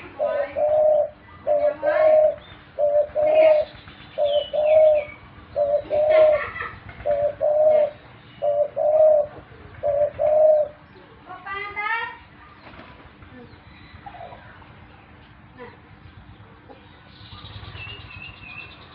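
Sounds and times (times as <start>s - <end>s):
dove cooing: 0.0s - 10.9s.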